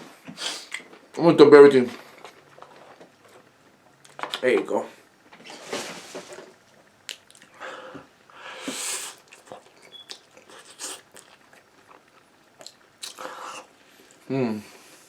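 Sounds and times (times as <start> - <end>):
rustling scrape: 5.4 - 6.6
chewing and biting food: 9.1 - 14.2.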